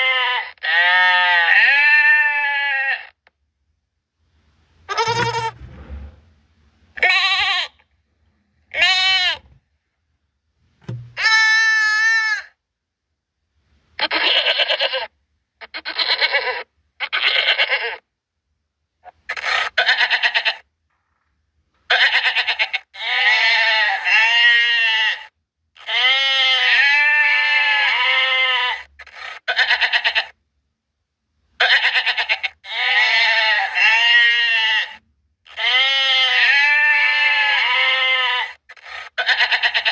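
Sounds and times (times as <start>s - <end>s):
goats bleating: 0.0s - 3.2s, 4.9s - 5.6s, 7.0s - 7.8s, 8.7s - 9.4s, 11.2s - 12.5s, 21.9s - 30.4s, 31.6s - 39.9s.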